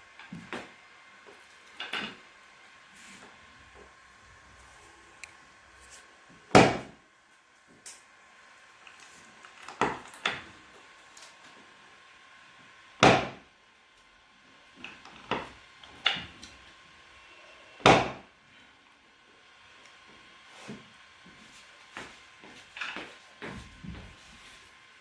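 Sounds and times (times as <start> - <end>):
knocks and thuds on treatment table: 13.0 - 13.4.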